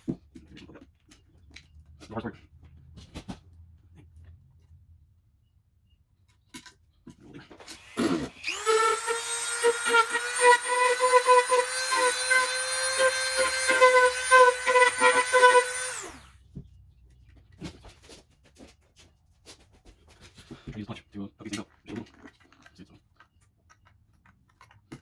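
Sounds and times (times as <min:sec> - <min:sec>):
power tool motor whining: 0:07.6 - 0:16.4.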